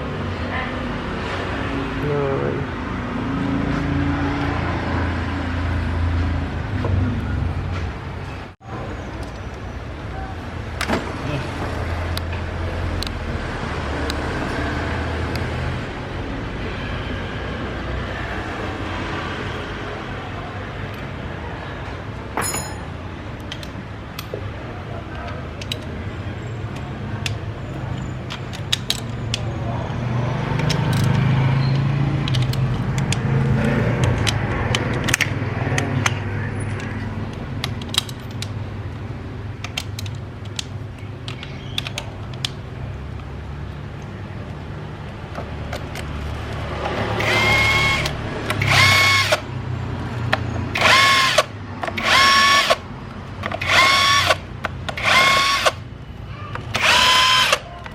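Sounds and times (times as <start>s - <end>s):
power tool whirring: 47.0s - 49.4s, 50.7s - 52.9s, 53.5s - 55.8s, 56.7s - 57.6s.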